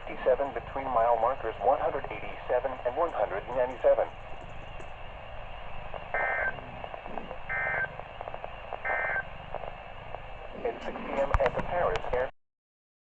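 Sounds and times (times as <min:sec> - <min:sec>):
radio static hiss: 0:00.0 - 0:12.4
warbling data tone bursts: 0:05.8 - 0:08.0, 0:08.6 - 0:09.7.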